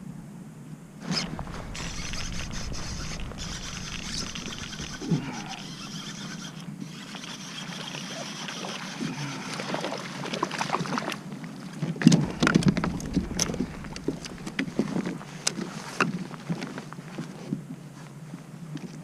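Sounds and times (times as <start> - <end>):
wind: 0.0 - 19.0
water wash: 1.0 - 6.6, 12.0 - 16.6.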